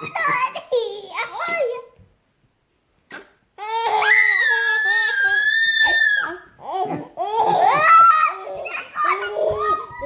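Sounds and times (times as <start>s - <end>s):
baby squealing: 3.6s - 10.0s.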